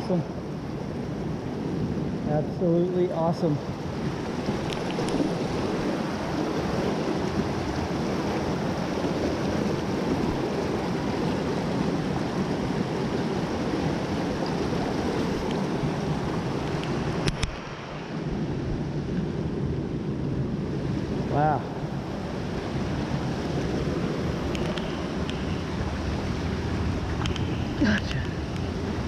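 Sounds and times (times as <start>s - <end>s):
creek water rushing: 0.0s - 29.0s
sharp click: 16.8s - 17.6s, 24.5s - 25.4s, 27.2s - 27.5s.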